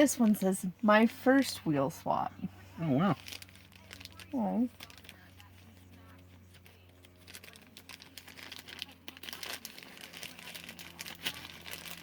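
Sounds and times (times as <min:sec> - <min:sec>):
crinkly wrapping rustling: 0:03.1 - 0:12.0.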